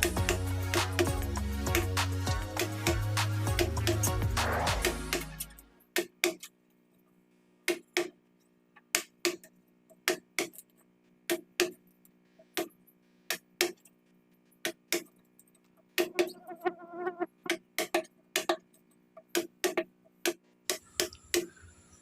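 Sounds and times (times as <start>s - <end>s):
soft steady tones: 15.4s - 17.5s.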